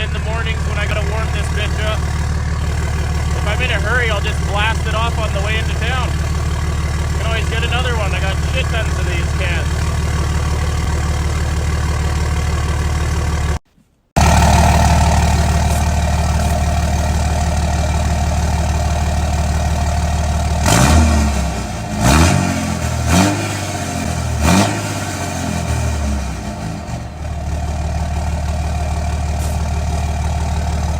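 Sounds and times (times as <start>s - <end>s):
diesel engine idling and revving: 0.0s - 13.6s, 14.2s - 30.9s.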